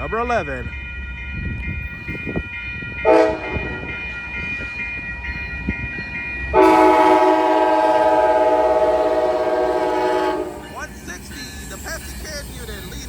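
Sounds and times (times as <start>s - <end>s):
crossing bell dinging: 0.0s - 13.0s
train rumble: 0.0s - 13.0s
locomotive horn blasts: 3.0s - 3.9s, 6.5s - 10.8s.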